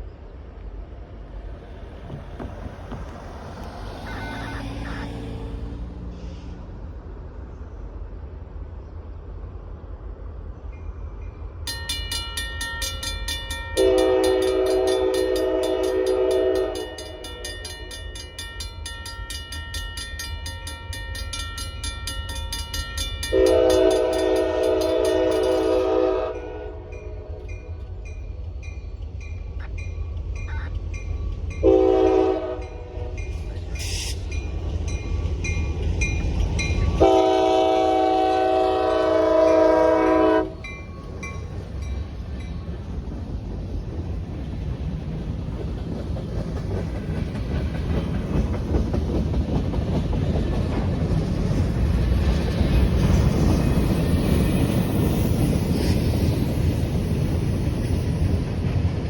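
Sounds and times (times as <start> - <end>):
locomotive horn blasts: 3.6 - 5.5, 13.8 - 17.2, 23.3 - 27.4, 31.6 - 34.2, 37.0 - 40.8
electronic crossing bell ringing: 3.9 - 5.4, 11.7 - 25.9, 29.6 - 31.2.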